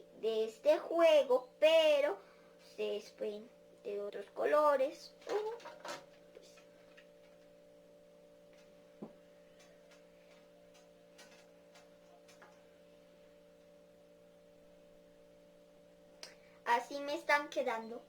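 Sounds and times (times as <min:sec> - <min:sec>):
faint electrical hum: 0:00.0 - 0:18.0.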